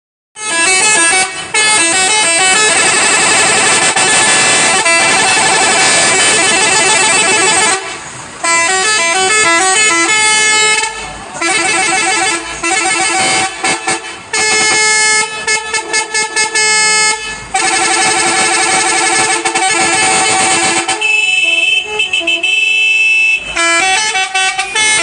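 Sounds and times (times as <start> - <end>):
bus musical horn playing tunes: 0.4 - 25.0.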